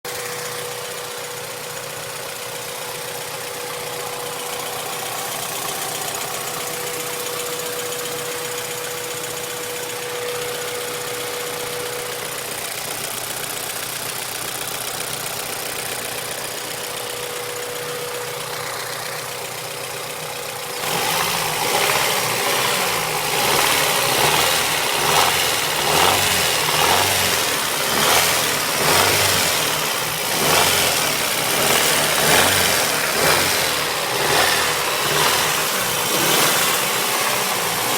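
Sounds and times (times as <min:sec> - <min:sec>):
engine running with knock: 0:18.2 - 0:37.9.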